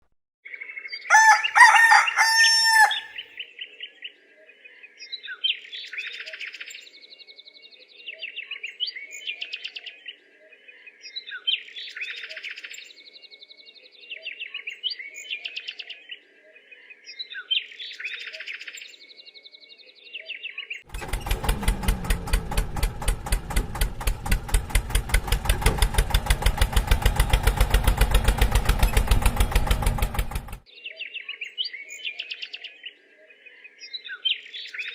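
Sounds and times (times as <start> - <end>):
rooster crowing: 1.1 - 3.2
rapid even flutter: 20.9 - 30.6.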